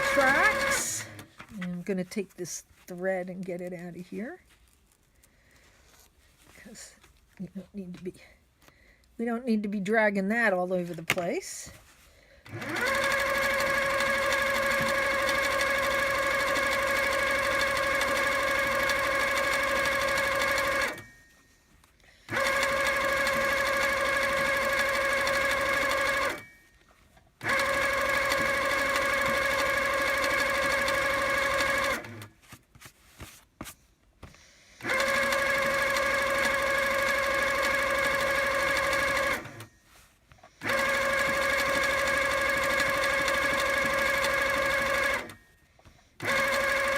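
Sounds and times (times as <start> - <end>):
quilting machine motor whine: 0.0 - 1.3, 12.5 - 21.0, 22.3 - 26.5, 27.4 - 32.3, 34.8 - 39.7, 40.6 - 45.4.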